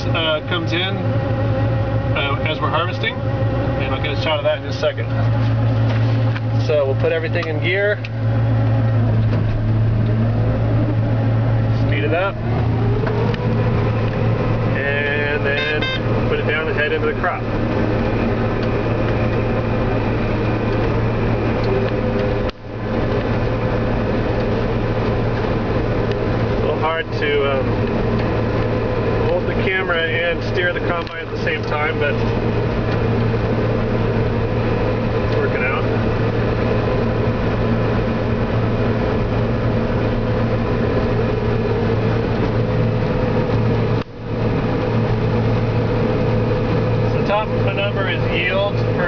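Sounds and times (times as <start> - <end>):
combine harvester drone: 0.0 - 49.0
high steady tone: 13.8 - 17.3.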